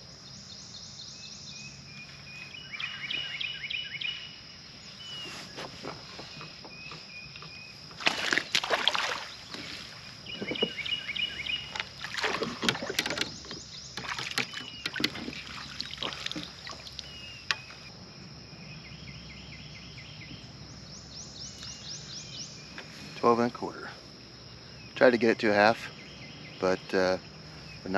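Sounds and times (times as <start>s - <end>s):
water splashing beside kayak: 5.0s - 17.9s.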